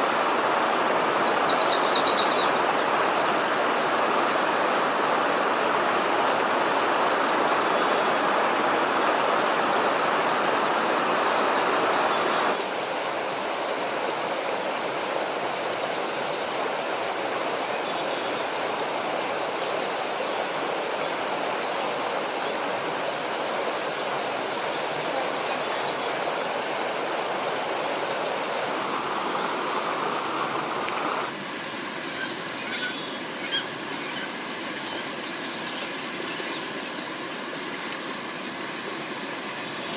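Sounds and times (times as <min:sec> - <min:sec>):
stream water running: 0:00.0 - 0:39.9
bird chirps: 0:32.2 - 0:36.9.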